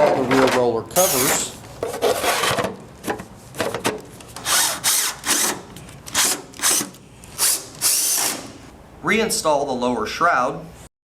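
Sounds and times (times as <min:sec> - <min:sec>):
power drill short bursts: 0:07.4 - 0:08.5.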